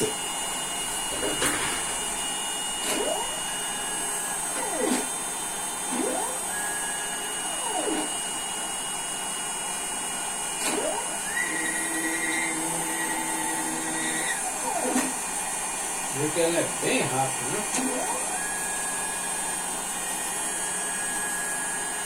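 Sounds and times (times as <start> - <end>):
spindle motor high whine: 0.0 - 22.0
stepper motor sweeping pitch: 2.8 - 5.1, 5.8 - 8.3, 10.6 - 15.1.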